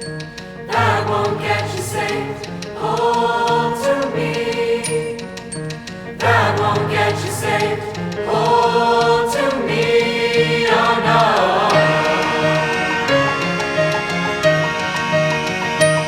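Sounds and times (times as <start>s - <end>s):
instrumental accompaniment: 0.0s - 16.0s
youth choir singing: 0.6s - 14.4s.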